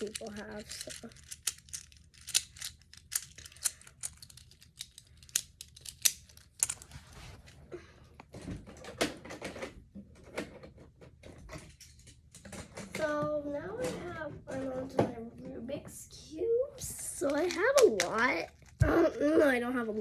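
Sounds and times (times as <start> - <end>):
plastic fidget toy clicking: 0.0 - 6.8.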